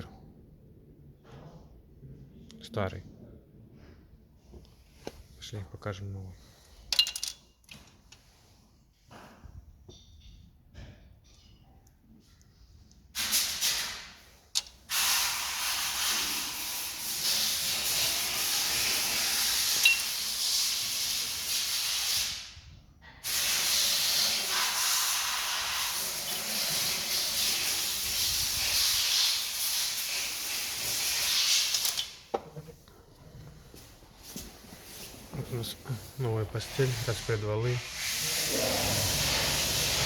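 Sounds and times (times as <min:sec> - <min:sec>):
pressurised jet hissing: 0:14.9 - 0:22.4, 0:23.2 - 0:31.9, 0:36.6 - 0:40.0.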